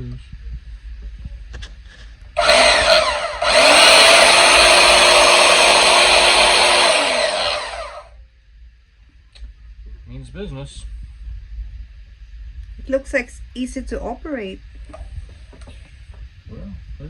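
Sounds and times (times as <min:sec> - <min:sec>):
band saw running: 0:02.4 - 0:08.1.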